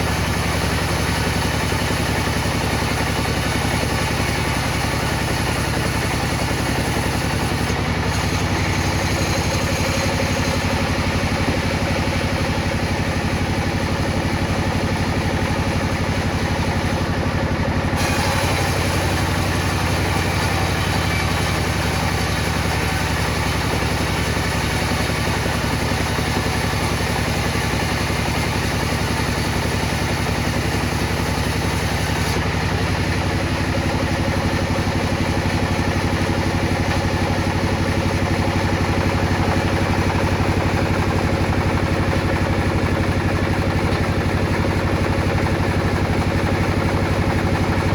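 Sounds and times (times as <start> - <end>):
table saw cutting wood: 0.0 - 33.4.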